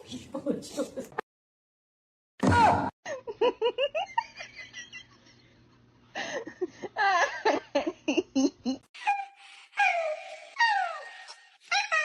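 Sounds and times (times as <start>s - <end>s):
person laughing: 6.4s - 8.9s.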